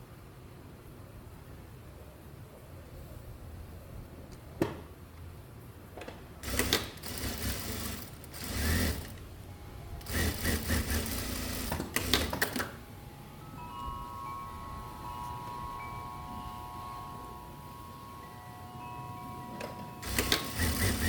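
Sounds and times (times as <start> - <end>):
sewing machine stitching: 6.4 - 9.2, 10.0 - 12.7, 20.0 - 21.0.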